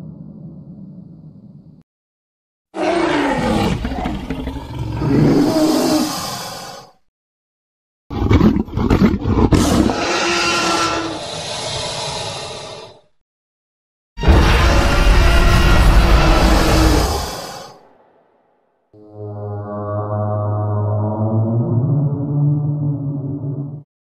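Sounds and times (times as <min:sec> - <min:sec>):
creature roar: 0:02.8 - 0:07.0, 0:08.1 - 0:13.0, 0:14.2 - 0:17.9.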